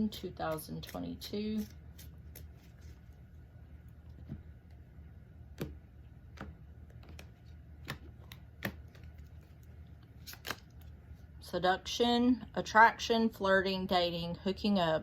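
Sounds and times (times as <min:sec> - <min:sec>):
cards clicking and snapping: 0:05.6 - 0:09.5, 0:10.2 - 0:10.9.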